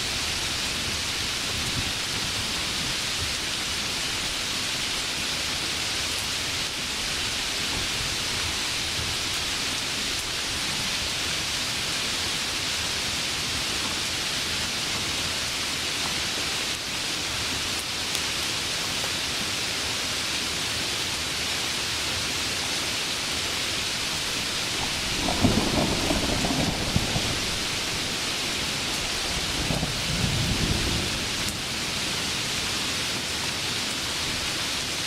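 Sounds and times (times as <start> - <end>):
heavy rain hissing: 0.0 - 35.0
low rough thunder rumble: 23.8 - 31.8.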